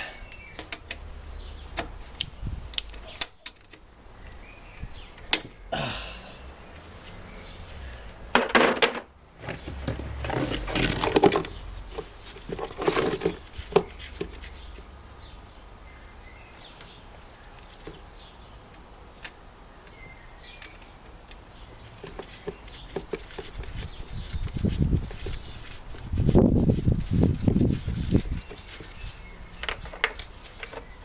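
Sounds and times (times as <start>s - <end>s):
handling rustles and knocks: 6.7s - 15.0s, 20.6s - 31.0s.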